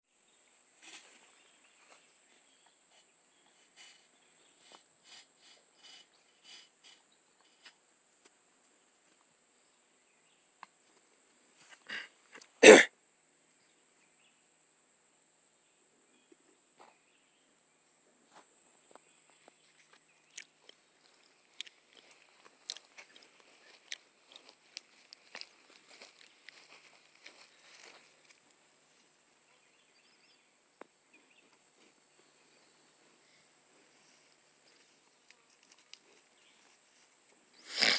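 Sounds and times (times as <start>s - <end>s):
cow coughing: 11.8s - 12.9s, 37.7s - 37.9s
faint clicks and rustles: 34.7s - 37.1s.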